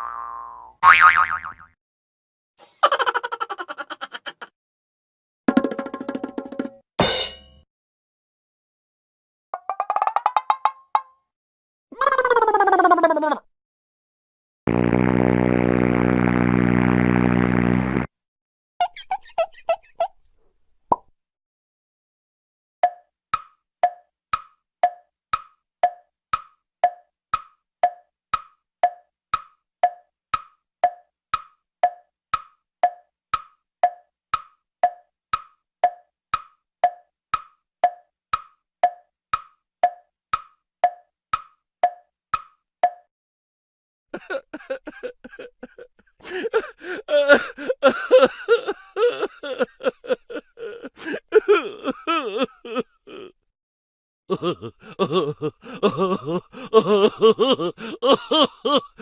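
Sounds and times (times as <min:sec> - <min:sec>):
clock tick-tock clicks: 0:22.8 - 0:43.0.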